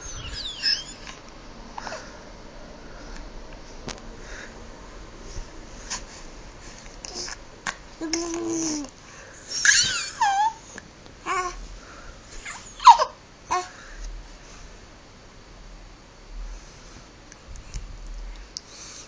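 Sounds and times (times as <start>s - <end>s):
baby squealing: 0.0s - 1.2s, 9.6s - 10.6s, 12.5s - 13.1s
baby babbling: 8.0s - 8.9s, 11.3s - 11.6s.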